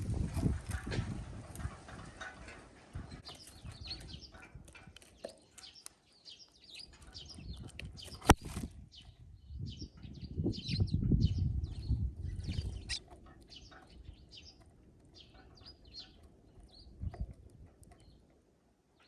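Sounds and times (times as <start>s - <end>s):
small birds chirping: 0.0s - 19.0s
sharp click: 8.1s - 8.7s.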